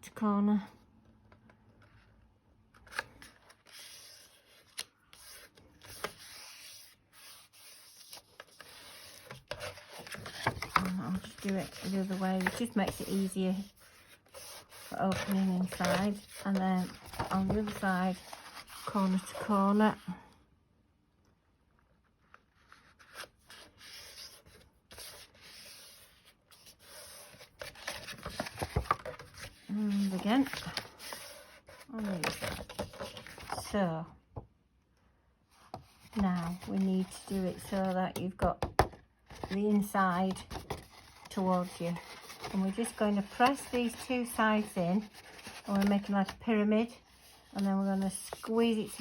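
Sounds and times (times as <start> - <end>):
paper being folded and creased: 2.8 - 19.8, 22.2 - 33.8, 35.8 - 38.0, 39.3 - 49.0
fingers scraping along paper fold: 2.9 - 19.5.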